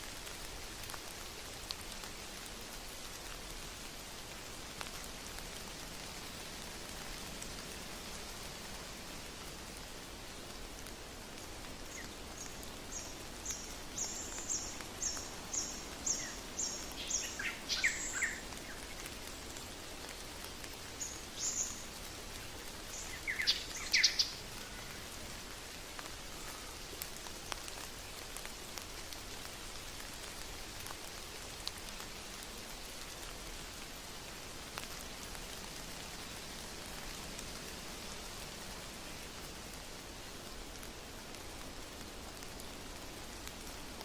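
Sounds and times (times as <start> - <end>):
steady rain: 0.0 - 44.0
bird calling: 14.0 - 18.4, 23.0 - 24.4.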